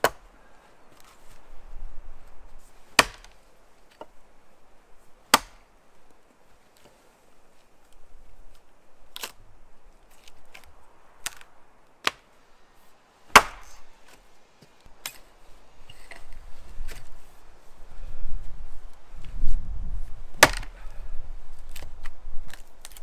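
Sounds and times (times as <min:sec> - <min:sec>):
axe chopping wood: 0:00.0 - 0:00.3, 0:03.0 - 0:03.4, 0:05.3 - 0:05.7, 0:10.5 - 0:12.3, 0:13.3 - 0:14.2, 0:20.4 - 0:20.8.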